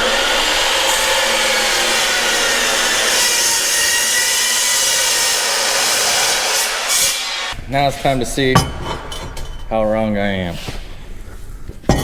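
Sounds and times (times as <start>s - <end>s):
power saw cutting: 0.0s - 7.6s.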